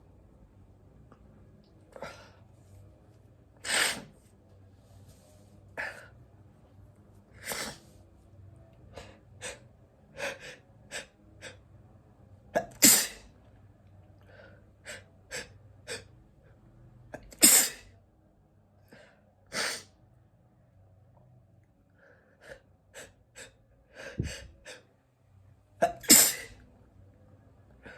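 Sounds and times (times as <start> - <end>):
person sneezing: 3.6 - 4.2, 7.4 - 7.9, 12.6 - 13.3, 17.2 - 17.9, 25.8 - 26.6.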